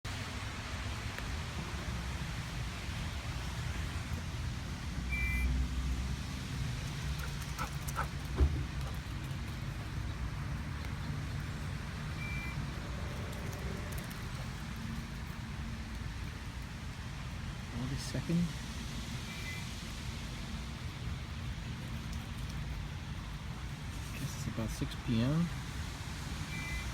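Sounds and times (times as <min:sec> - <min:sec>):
short high beeps: 0:05.1 - 0:05.5, 0:12.2 - 0:12.6, 0:19.3 - 0:19.6, 0:26.5 - 0:26.9.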